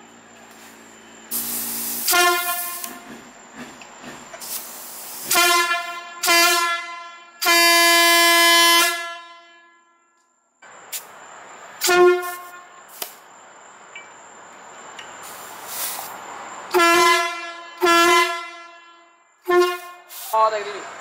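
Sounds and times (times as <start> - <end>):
hiss of air: 0.5 - 3.1, 4.4 - 5.5, 10.9 - 11.2, 11.8 - 13.2, 15.2 - 16.3, 20.0 - 20.5
fire truck air horn blasts: 1.3 - 3.2, 4.4 - 10.2, 11.8 - 13.0, 16.7 - 20.4.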